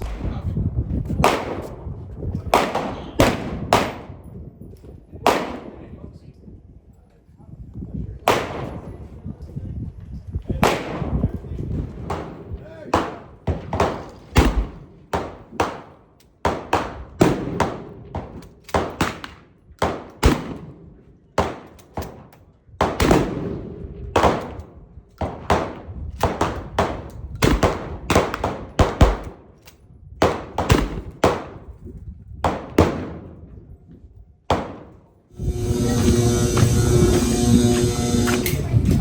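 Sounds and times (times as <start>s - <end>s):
gunshots with echo: 0.0s - 4.2s, 5.2s - 5.9s, 8.3s - 9.0s, 10.6s - 20.8s, 21.4s - 29.5s, 30.2s - 31.6s, 34.5s - 39.0s.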